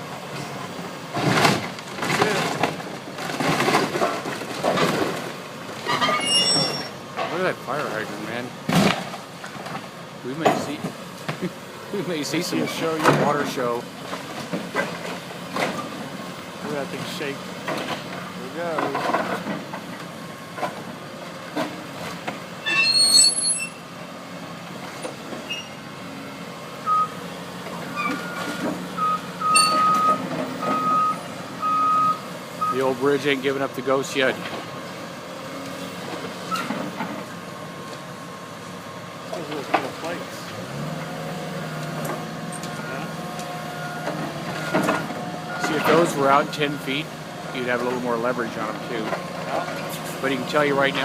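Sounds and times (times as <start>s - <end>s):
demolition machinery crunching: 0.2s - 11.5s, 12.1s - 22.6s, 39.2s - 51.0s
metal bridge screeching: 5.8s - 8.0s, 22.6s - 23.9s, 25.4s - 25.8s, 27.8s - 32.8s
faint metal squeaks: 5.9s - 7.0s, 22.6s - 23.8s, 25.4s - 25.8s.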